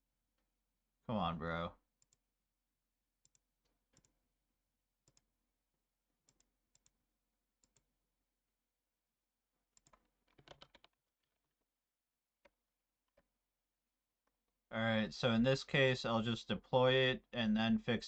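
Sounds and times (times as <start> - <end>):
computer mouse clicks: 5.0 - 5.3, 6.3 - 7.0, 9.8 - 10.9
keyboard typing: 9.8 - 11.0.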